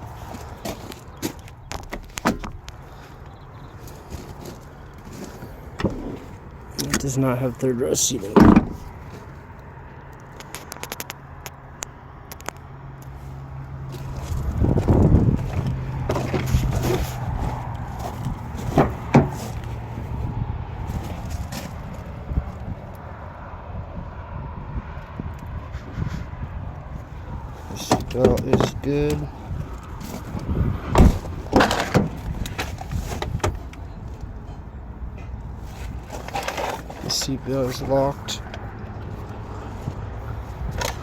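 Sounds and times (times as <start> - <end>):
car interior parts clicking: 0.0 - 7.2, 8.2 - 9.4, 13.9 - 22.1, 27.3 - 41.0
rustling and handling noises: 0.0 - 9.6, 13.9 - 22.2, 27.2 - 34.3, 35.2 - 41.0
steady low rumble: 0.0 - 10.0, 13.1 - 41.0.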